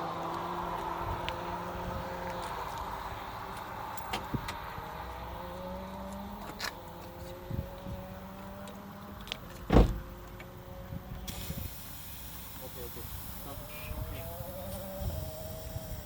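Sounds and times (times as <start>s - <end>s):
loud thump: 9.7s - 10.1s
small motor whining: 13.4s - 16.0s.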